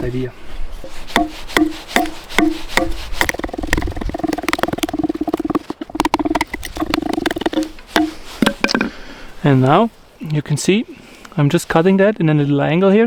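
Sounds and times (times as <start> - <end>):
hand saw cutting log: 0.8 - 8.7.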